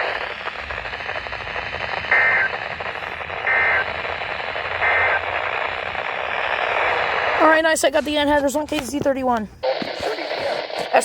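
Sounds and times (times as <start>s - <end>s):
two-tone warbling data bursts: 0.0s - 7.5s
radio hiss: 0.0s - 8.1s, 9.5s - 11.0s.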